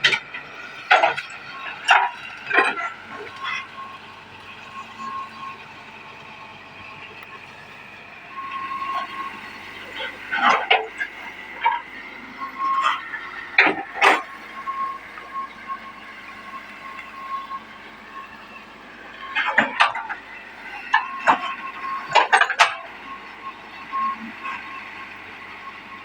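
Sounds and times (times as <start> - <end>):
excavator bucket clanks and scrapes: 0.0 - 3.8, 8.5 - 14.4, 19.3 - 20.2, 20.9 - 22.9
excavator whine: 0.0 - 26.0.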